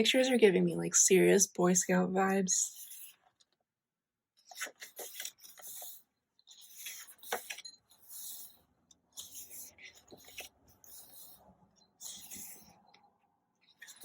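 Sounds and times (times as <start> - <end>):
paper pages rustling: 9.2 - 10.6.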